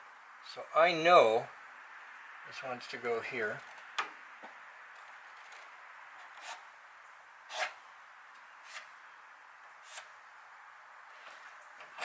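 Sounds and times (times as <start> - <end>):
scratchy marker strokes: 9.8 - 10.1.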